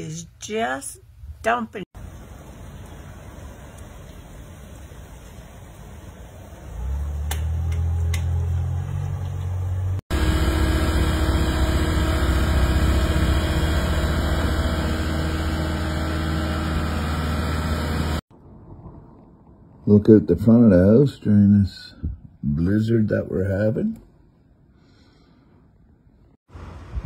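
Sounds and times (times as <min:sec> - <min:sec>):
engine droning: 0:02.0 - 0:18.2.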